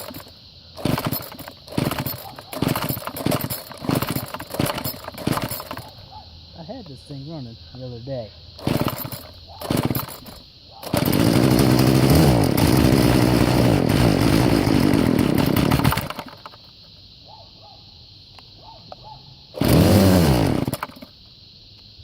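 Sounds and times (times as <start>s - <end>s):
string trimmer engine revving: 0.0s - 5.8s, 8.6s - 16.5s, 19.6s - 21.1s.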